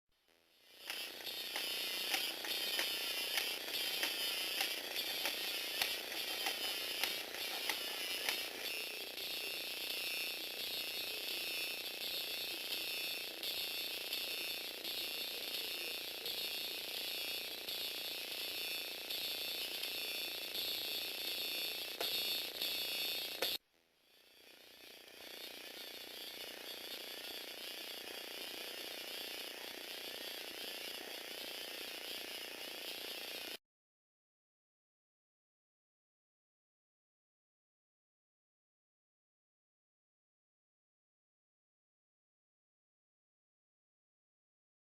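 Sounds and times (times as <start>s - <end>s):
gear clicking: 0.6s - 23.6s, 24.2s - 33.6s
electric motor whirring: 0.6s - 33.6s.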